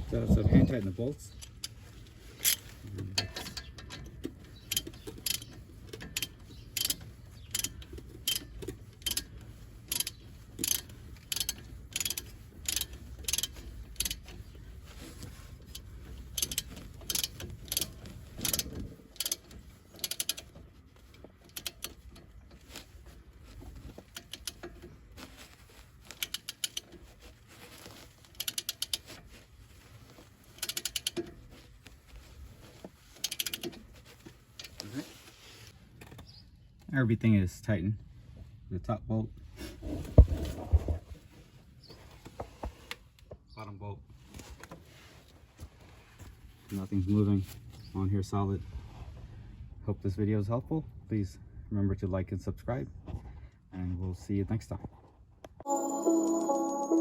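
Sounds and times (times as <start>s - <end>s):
socket ratchet clicking: 4.7s - 9.3s, 9.9s - 14.2s, 20.0s - 20.4s.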